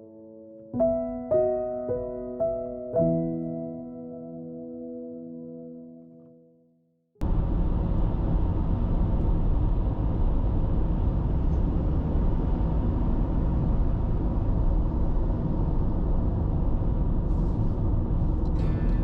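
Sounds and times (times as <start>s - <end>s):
car engine and tyre rumble: 7.2s - 19.0s.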